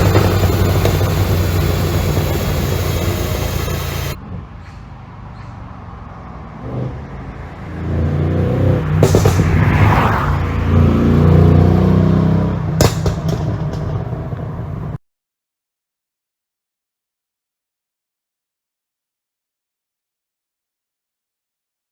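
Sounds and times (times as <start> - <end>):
car engine revving: 0.0 - 4.2
exhaust pops and crackles: 0.0 - 4.2.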